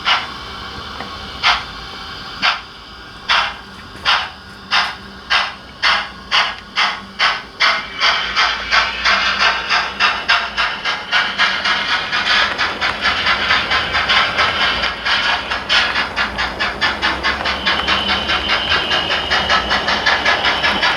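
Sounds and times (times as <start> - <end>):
steam hiss: 0.0 - 20.9
steam locomotive chuffing: 0.0 - 20.9.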